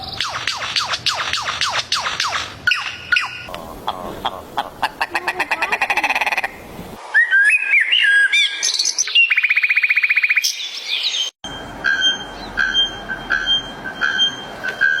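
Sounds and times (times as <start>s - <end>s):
bird whistling and trilling: 0.0s - 3.5s, 7.1s - 11.3s.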